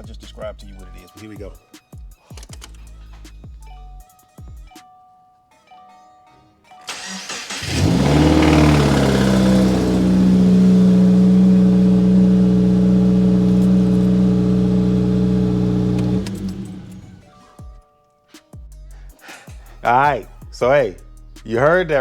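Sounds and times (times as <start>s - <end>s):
car engine starting and idling: 6.9s - 17.4s.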